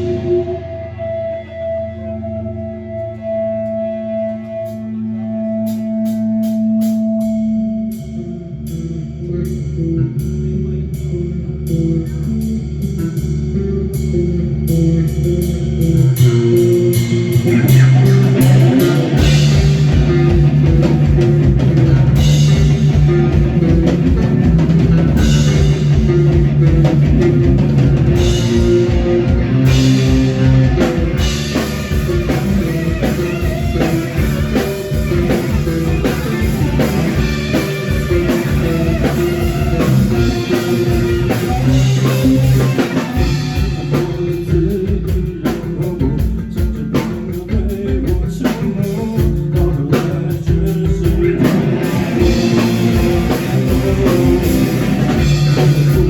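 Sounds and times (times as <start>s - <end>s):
bass guitar: 0.0s - 56.0s
electric guitar: 0.0s - 56.0s
drum kit beat: 5.7s - 7.5s, 14.0s - 56.0s.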